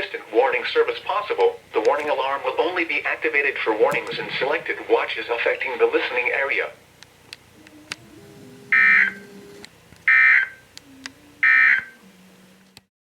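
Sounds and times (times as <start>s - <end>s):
digital data tone bursts: 8.6s - 10.6s, 11.4s - 12.0s.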